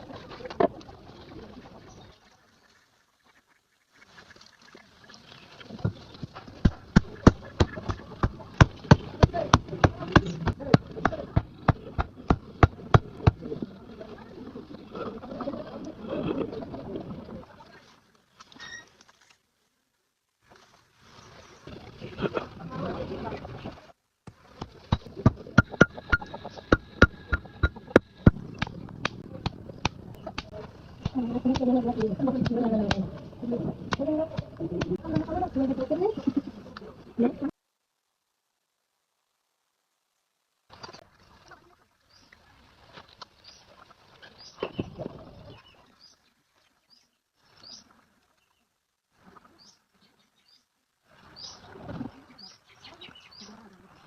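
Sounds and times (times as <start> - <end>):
wings rustling and fluttering: 0.0 - 13.4
small birds chirping: 5.4 - 12.6, 51.3 - 53.8.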